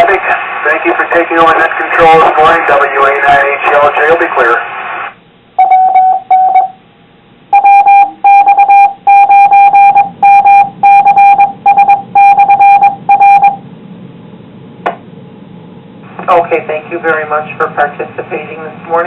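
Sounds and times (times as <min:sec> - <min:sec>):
faint radio hiss: 0:00.0 - 0:05.6, 0:15.3 - 0:19.0
morse code beeping tone: 0:05.6 - 0:06.8, 0:07.5 - 0:13.6
short beeps: 0:05.6 - 0:06.8, 0:07.5 - 0:13.6.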